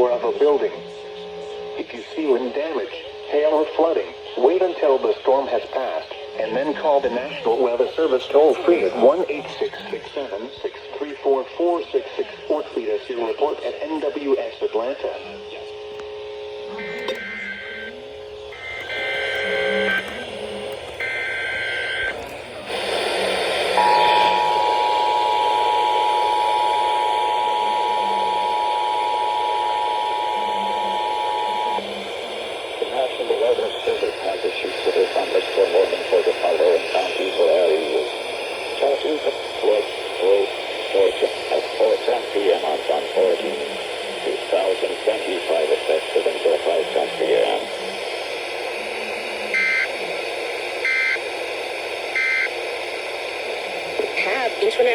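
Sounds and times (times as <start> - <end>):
radio static hiss: 0.0 - 54.9
two-tone alert signal: 23.8 - 31.8.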